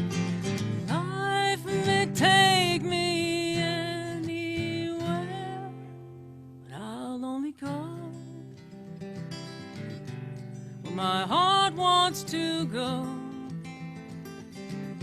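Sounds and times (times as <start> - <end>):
acoustic guitar: 0.0 - 15.0
person singing: 0.8 - 6.0, 10.9 - 13.6.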